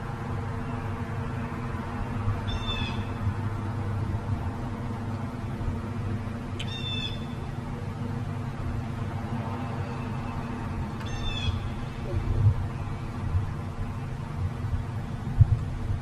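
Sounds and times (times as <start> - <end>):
steady low hum: 0.0 - 16.0
high-pitched animal calls: 2.5 - 3.1, 6.6 - 7.3, 11.0 - 11.8.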